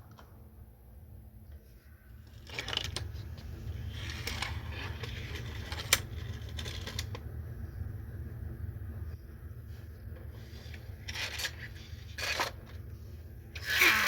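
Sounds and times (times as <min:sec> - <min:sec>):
plastic toy track clicking: 0:02.3 - 0:03.1, 0:03.9 - 0:07.2.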